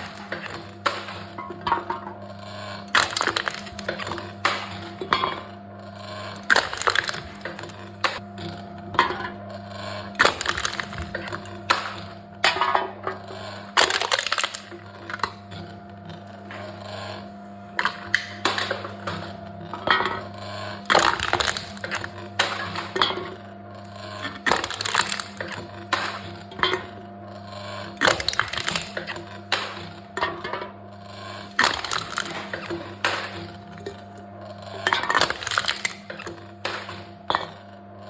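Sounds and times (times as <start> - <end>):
cans being crushed: 0.0 - 1.0, 2.9 - 4.6, 6.4 - 8.2, 10.2 - 11.8, 13.8 - 14.7, 20.8 - 22.8, 24.3 - 26.2, 28.0 - 29.7, 31.5 - 34.0, 34.9 - 36.9.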